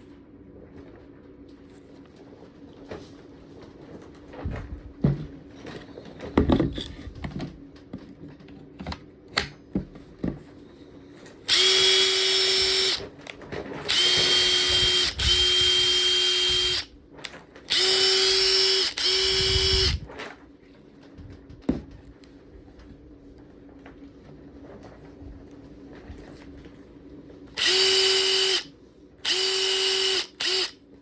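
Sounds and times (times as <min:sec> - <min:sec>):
impact driver motor whine: 0:11.5 - 0:13.1, 0:13.9 - 0:16.9, 0:17.7 - 0:20.1, 0:27.6 - 0:30.8.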